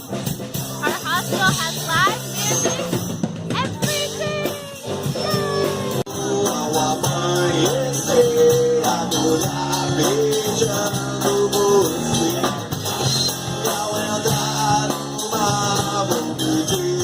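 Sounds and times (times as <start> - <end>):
rock song with guitar and singing: 0.0 - 17.0.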